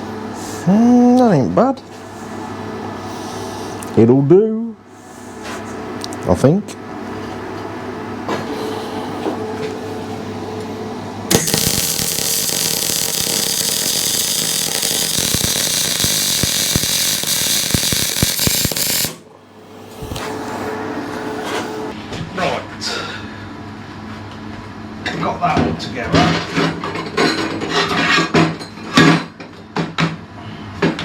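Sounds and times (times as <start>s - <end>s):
low hum: 8.3s - 22.0s
arc welding crackling hiss: 11.3s - 19.2s.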